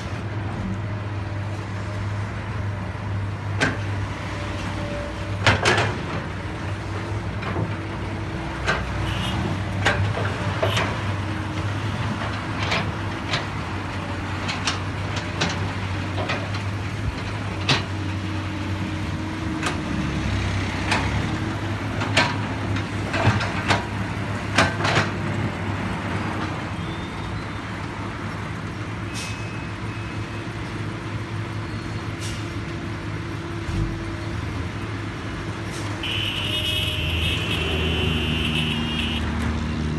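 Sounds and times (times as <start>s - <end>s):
excavator diesel engine running: 29.7s - 39.9s.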